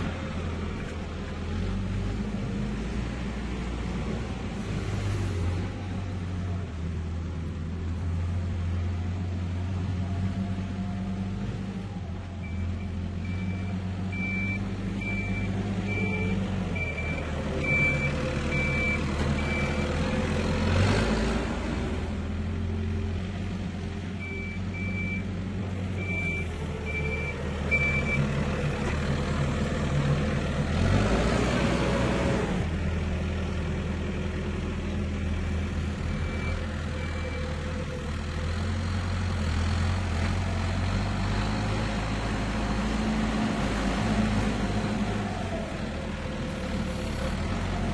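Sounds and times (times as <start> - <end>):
reversing alarm beeping: 12.4 - 20.0, 26.0 - 28.3
tractor engine idling: 22.2 - 30.7.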